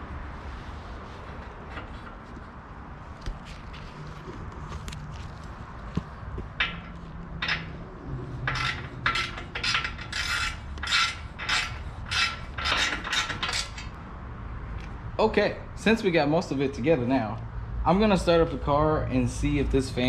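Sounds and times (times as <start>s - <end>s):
hand tool rasping: 8.4s - 14.0s.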